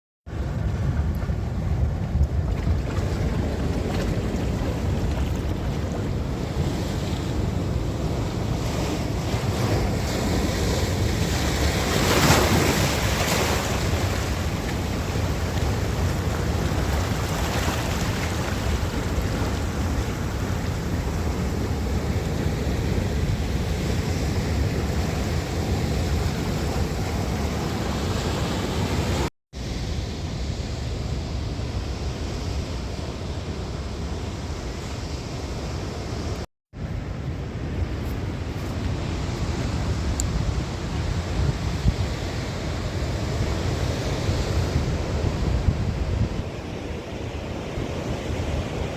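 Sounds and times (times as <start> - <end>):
wind buffeting microphone: 0.3 - 29.3, 30.6 - 48.9
ocean surf washing onto beach: 0.3 - 36.4.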